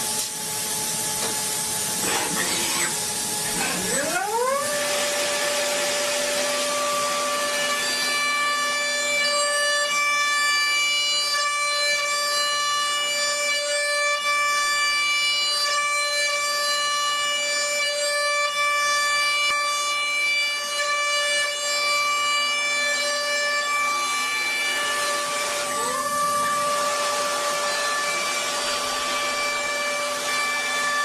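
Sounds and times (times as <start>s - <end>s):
machine tool motor whining: 22.0s - 31.0s.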